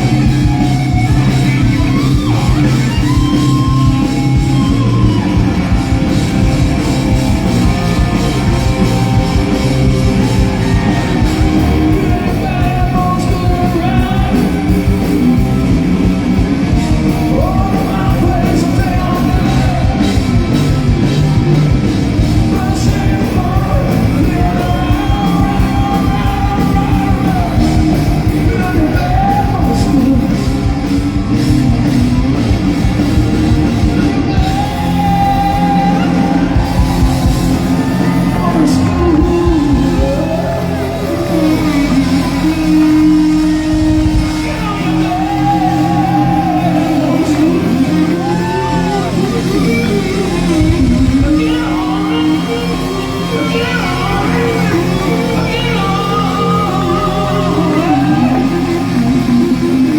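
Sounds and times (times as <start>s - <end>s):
lead singer singing: 0.0s - 59.9s
rock band playing loudly: 0.0s - 59.9s.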